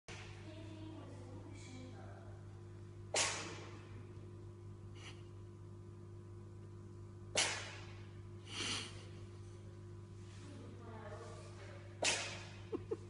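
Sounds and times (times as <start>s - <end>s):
cat sneezing: 3.1s - 3.6s, 7.4s - 7.8s, 12.0s - 12.6s.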